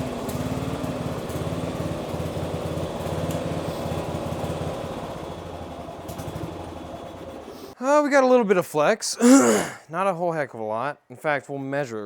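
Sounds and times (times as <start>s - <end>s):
riding lawn mower engine: 0.0s - 7.8s.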